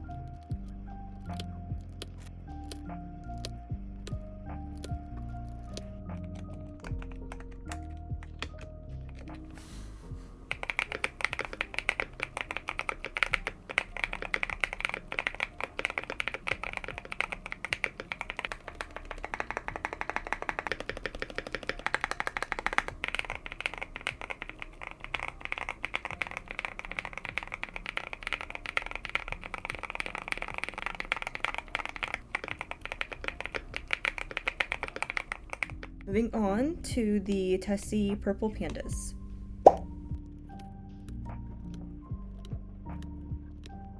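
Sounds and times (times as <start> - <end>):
fast typing on mechanical keyboard: 4.1 - 9.4, 10.5 - 36.1.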